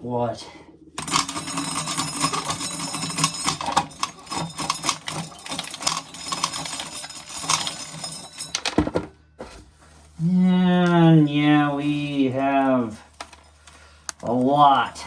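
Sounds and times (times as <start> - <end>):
corn kernels crackling rattle: 1.0 - 8.7.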